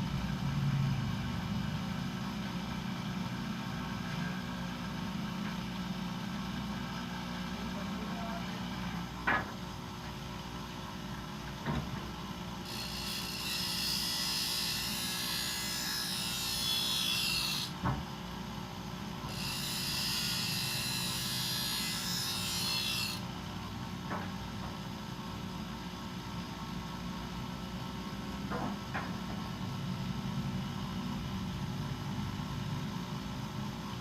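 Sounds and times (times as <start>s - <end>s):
bench grinder humming: 12.6s - 17.8s, 19.2s - 23.3s.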